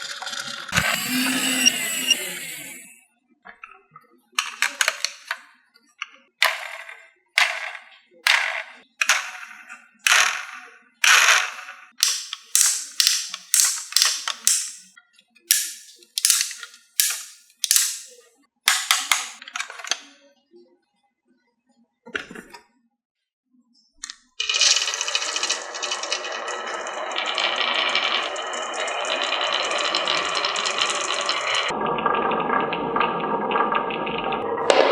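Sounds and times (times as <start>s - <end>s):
wooden clacks on marble track: 10.1s - 14.9s, 15.5s - 19.4s.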